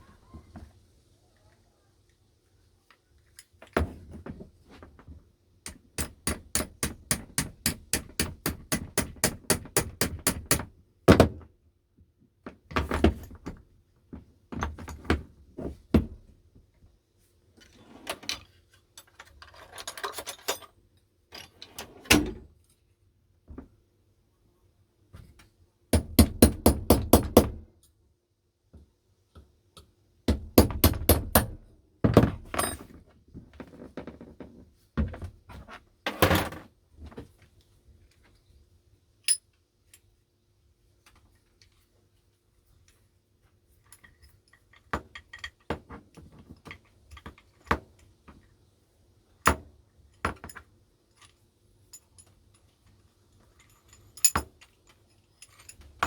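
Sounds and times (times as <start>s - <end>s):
hammer knocking on metal: 30.3s - 32.3s
metal parts clinking: 53.6s - 56.0s.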